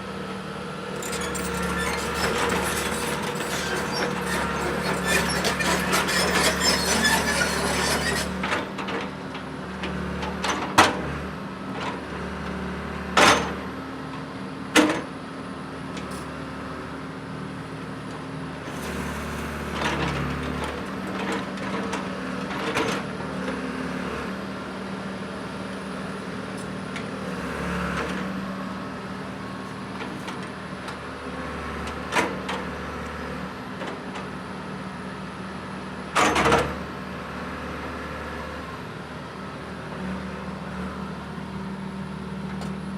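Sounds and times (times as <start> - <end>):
excavator diesel engine running: 0.0 - 11.7.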